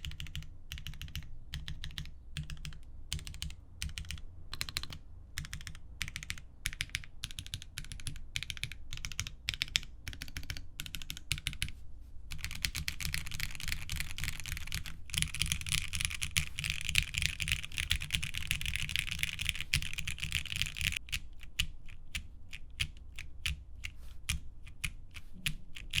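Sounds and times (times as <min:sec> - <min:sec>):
mechanical keyboard typing: 0:00.0 - 0:11.7, 0:12.3 - 0:26.0.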